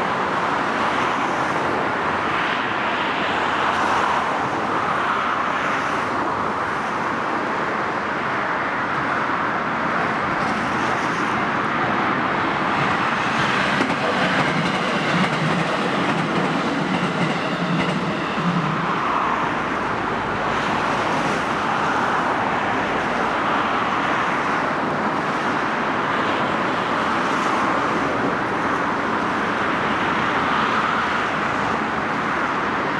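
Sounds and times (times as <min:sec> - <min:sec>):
train rolling past: 0:08.4 - 0:32.9.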